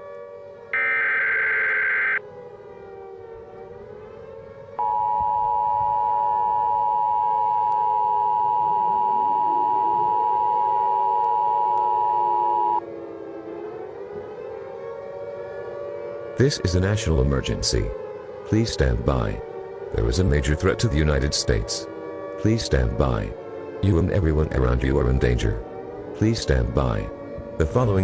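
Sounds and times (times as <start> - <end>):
civil defense siren wailing: 0.0 - 28.0
screeching digital data burst: 0.8 - 2.2
two-tone attention signal: 0.8 - 2.2.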